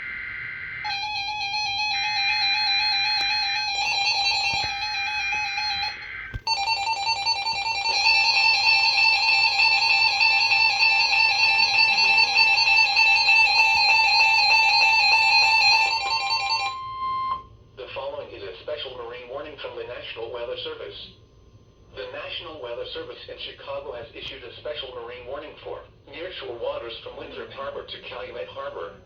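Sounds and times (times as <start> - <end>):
repeating electronic tones: 0.9 - 17.2.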